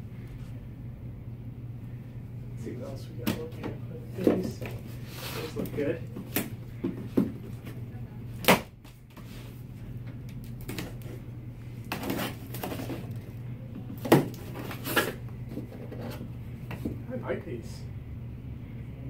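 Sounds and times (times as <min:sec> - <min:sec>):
steady low hum: 0:00.0 - 0:19.0
packaging rustling: 0:11.8 - 0:13.3.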